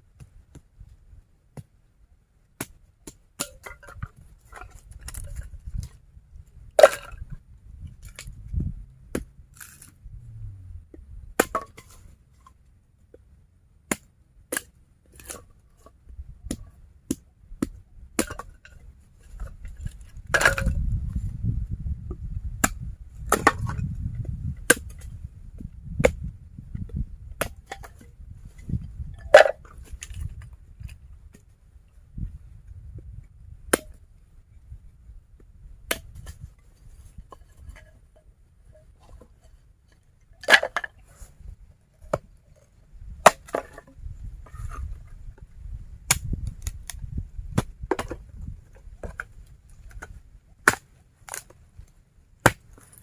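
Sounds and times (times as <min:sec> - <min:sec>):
low rumble: 0:07.3 - 0:11.4.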